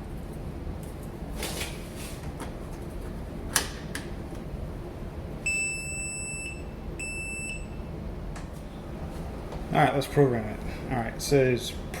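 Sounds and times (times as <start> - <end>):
smart lock electronic beeps: 5.5 - 7.8.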